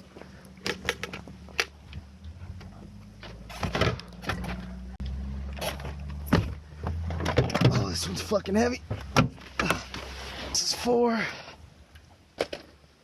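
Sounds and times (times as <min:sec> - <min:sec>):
scooters knocking and rattling: 0:00.0 - 0:02.0, 0:02.6 - 0:04.8, 0:05.6 - 0:10.0.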